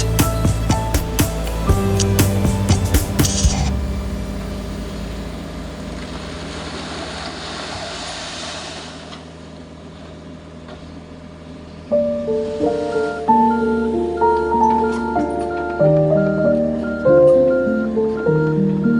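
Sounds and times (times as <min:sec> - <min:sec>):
large engine humming: 0:00.0 - 0:08.5.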